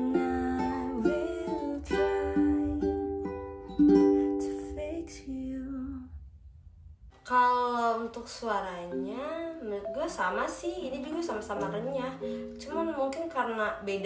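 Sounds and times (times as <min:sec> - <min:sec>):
ukulele chords strummed: 0:00.0 - 0:05.7, 0:08.9 - 0:13.4.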